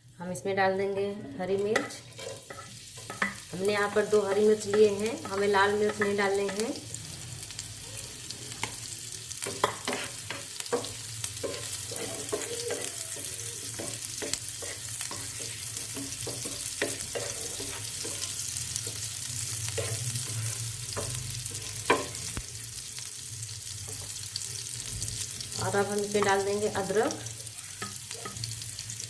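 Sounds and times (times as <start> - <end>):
chillies sizzling in hot oil: 0.0 - 29.0
spatula scraping and tapping pan: 1.6 - 6.6, 9.4 - 22.4.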